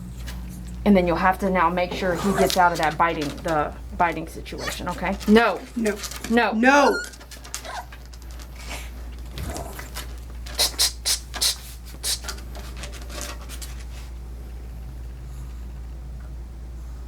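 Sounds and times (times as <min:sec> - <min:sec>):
low background hum: 0:00.0 - 0:17.0
shears snipping fur: 0:01.8 - 0:06.4.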